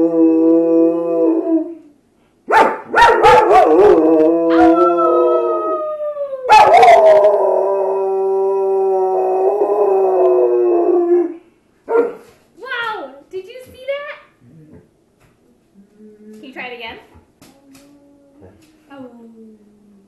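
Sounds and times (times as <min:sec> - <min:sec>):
dogs howling together: 0:03.0 - 0:11.4.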